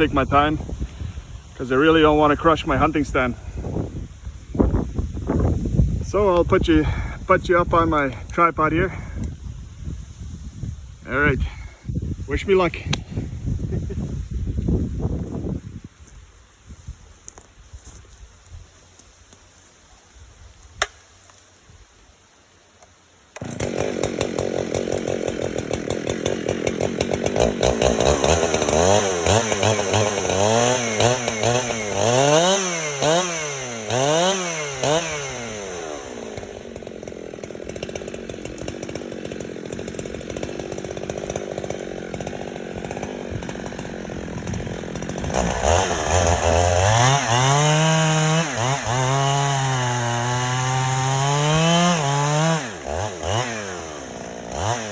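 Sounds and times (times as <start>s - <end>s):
chainsaw cutting wood: 20.7s - 21.6s, 22.8s - 54.9s.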